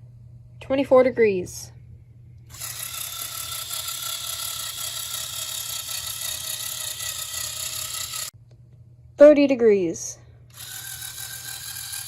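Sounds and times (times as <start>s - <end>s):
toy motor whirring: 2.5s - 8.3s, 10.5s - 12.0s.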